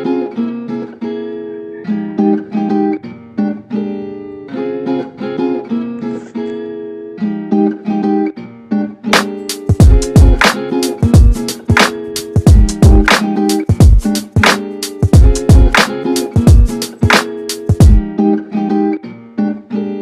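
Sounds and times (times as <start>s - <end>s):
acoustic guitar playing chords: 0.0s - 20.0s
sharp percussive hits: 9.2s - 18.0s.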